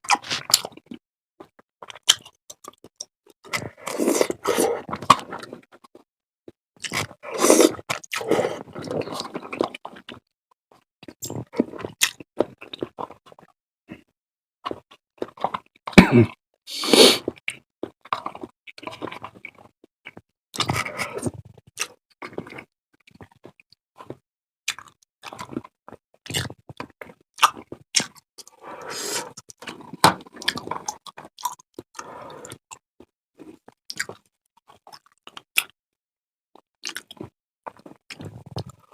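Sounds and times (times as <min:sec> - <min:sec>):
wet chewing and biting: 0:21.8 - 0:35.7.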